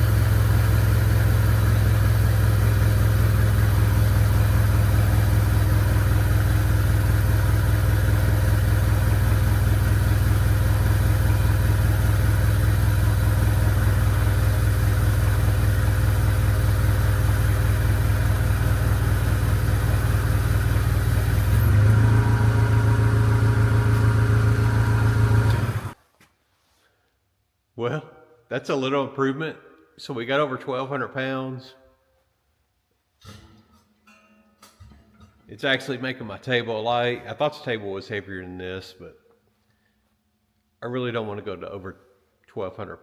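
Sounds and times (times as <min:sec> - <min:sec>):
motor humming: 0:09.7 - 0:26.0.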